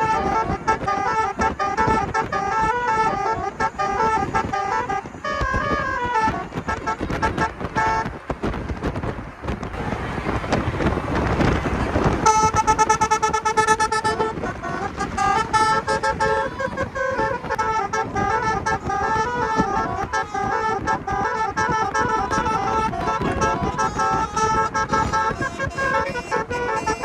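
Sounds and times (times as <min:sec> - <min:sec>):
musical car horn playing a tune: 0:00.0 - 0:08.2, 0:09.8 - 0:27.0
rushing noise: 0:05.8 - 0:19.0.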